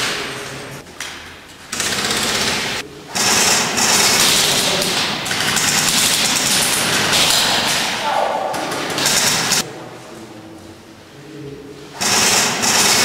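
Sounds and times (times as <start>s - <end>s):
airsoft guns firing bursts: 1.7s - 9.6s, 12.0s - 13.0s.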